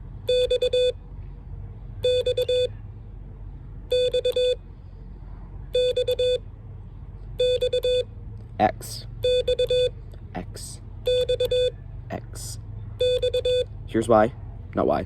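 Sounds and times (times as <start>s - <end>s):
morse code beeps: 0.3s - 1.0s, 2.0s - 2.7s, 3.9s - 4.6s, 5.8s - 6.4s, 7.4s - 8.1s, 9.2s - 10.0s, 11.0s - 11.8s, 13.0s - 13.7s.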